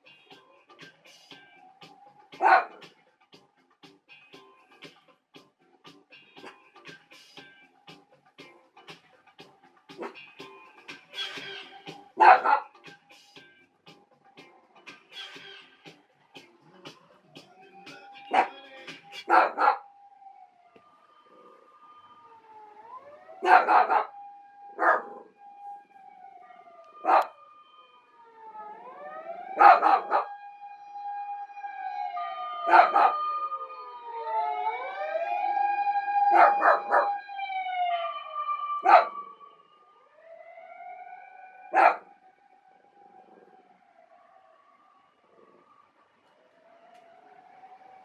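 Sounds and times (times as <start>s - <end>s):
distant siren wailing: 0.0s - 3.1s, 6.3s - 13.6s, 14.4s - 48.0s
dog barking: 2.4s - 2.8s, 12.2s - 12.7s, 18.3s - 18.6s, 19.2s - 19.9s, 23.4s - 24.2s, 24.8s - 25.3s, 26.5s - 27.4s, 29.6s - 30.3s, 32.7s - 33.2s, 36.3s - 37.2s, 38.8s - 39.2s, 41.7s - 42.1s.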